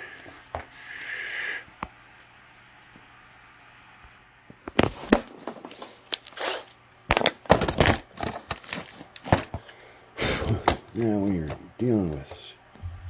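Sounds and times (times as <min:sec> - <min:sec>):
hands handling small parts: 0:05.1 - 0:09.7.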